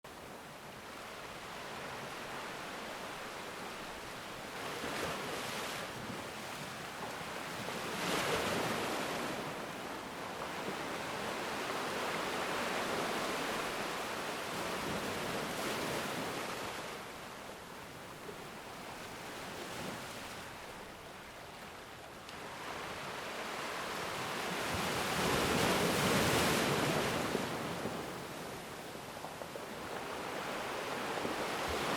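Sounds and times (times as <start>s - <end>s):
sea waves washing in: 19.1s - 31.9s.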